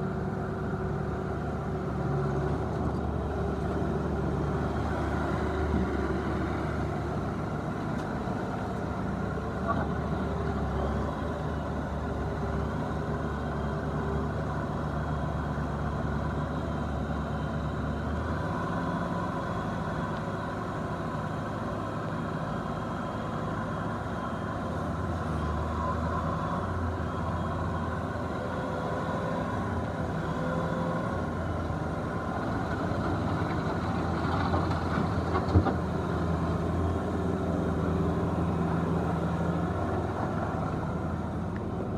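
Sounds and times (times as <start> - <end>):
diesel engine running: 0.0 - 41.9.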